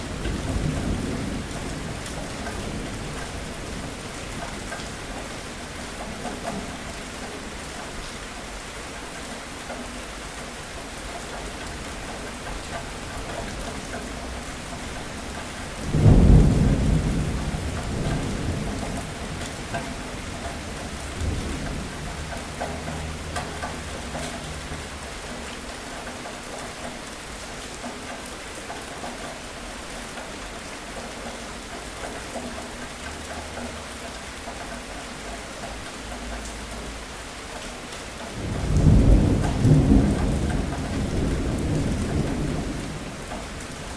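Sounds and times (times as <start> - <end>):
heavy rain falling: 0.0 - 43.9
thunder rumbling: 15.8 - 22.3, 38.4 - 43.9.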